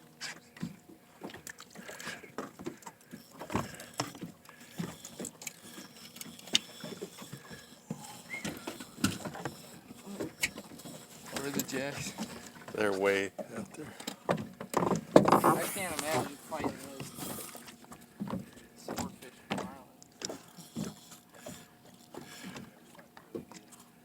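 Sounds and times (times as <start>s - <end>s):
water lapping against a hull: 0.0s - 24.0s
knocks and taps on a boat: 10.2s - 15.6s, 16.6s - 21.0s, 22.1s - 23.7s.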